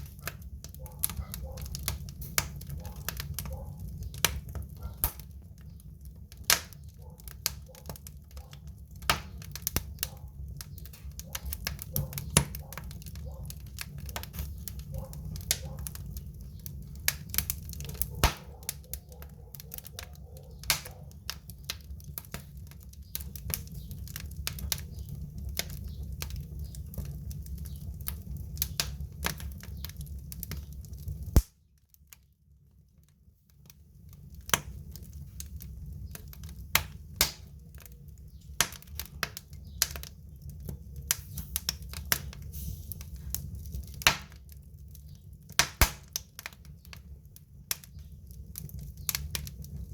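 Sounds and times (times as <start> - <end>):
wood fire crackling: 0.0 - 49.9.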